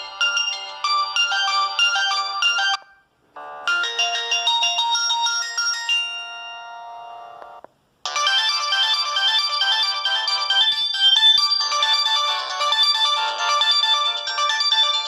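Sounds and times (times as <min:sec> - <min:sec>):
phone ringtone melody: 0:00.0 - 0:15.0.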